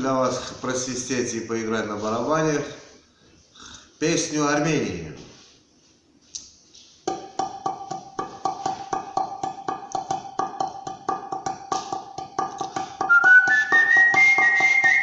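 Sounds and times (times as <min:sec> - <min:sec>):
hand drum beating: 0:07.1 - 0:15.0.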